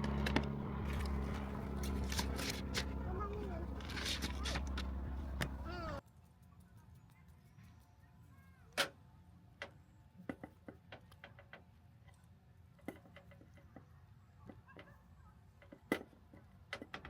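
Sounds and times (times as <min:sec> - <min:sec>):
faint low rumble: 0:00.0 - 0:06.0
light clicks and knocks: 0:00.0 - 0:06.0.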